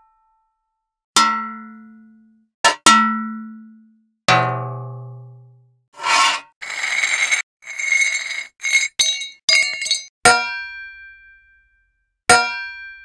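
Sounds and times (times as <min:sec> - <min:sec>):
metallic rattles and scrapes: 0:06.0 - 0:10.1.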